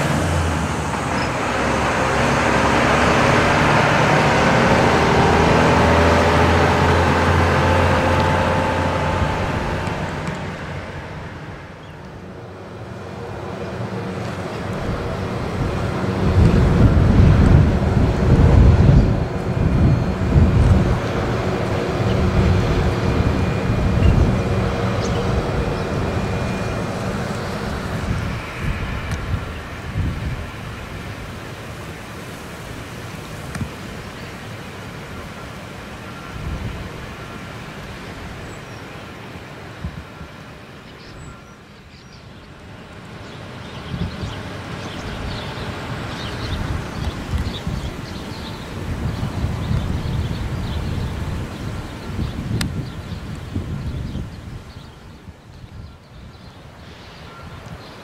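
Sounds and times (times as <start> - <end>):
heavy vehicle engine running: 0.0 - 34.3
road traffic noise: 0.0 - 58.0.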